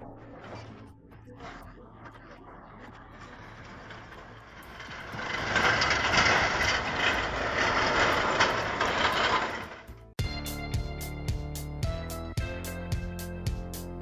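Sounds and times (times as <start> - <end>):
heavy machinery running: 0.0 - 10.1.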